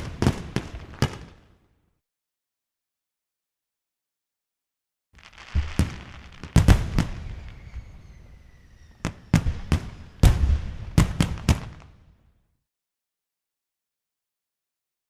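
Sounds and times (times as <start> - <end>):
fireworks banging: 0.0 - 1.4, 5.2 - 12.0
faint high whistle: 6.9 - 10.2.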